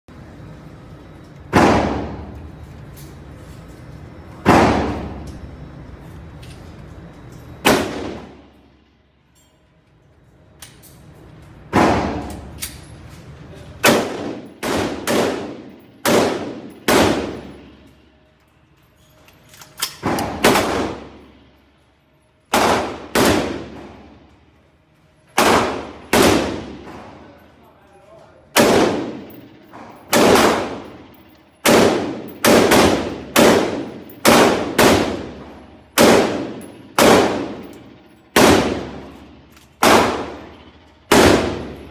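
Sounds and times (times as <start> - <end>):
rifle shots echoing: 4.5 - 5.2, 7.6 - 8.5, 11.8 - 12.5, 13.8 - 17.9, 20.0 - 21.2, 22.5 - 24.2, 25.4 - 27.2, 28.5 - 41.9.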